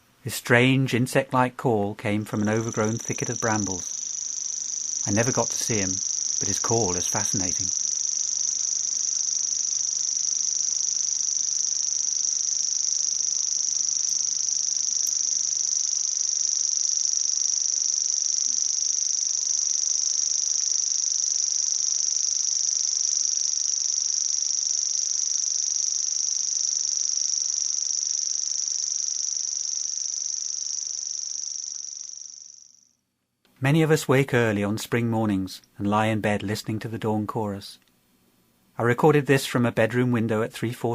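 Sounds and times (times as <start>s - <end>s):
bird reeling trill: 2.5s - 33.0s.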